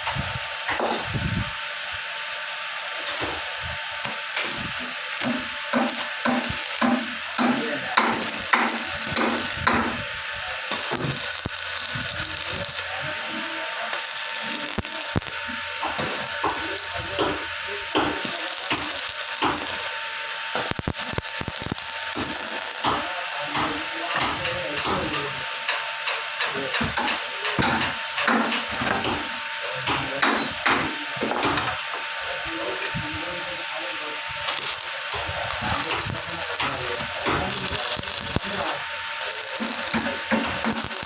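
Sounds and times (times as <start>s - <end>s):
steady hiss: 4.0s - 20.0s, 34.4s - 41.0s.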